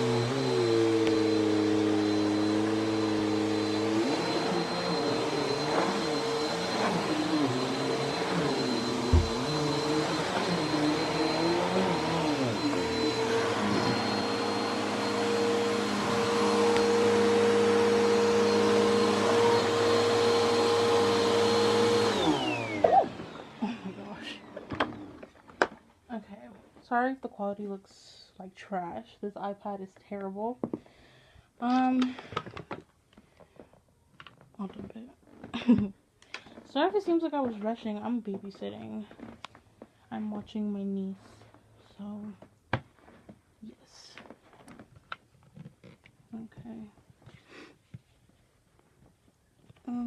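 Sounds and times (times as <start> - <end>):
vacuum cleaner running on carpet: 0.0 - 25.3.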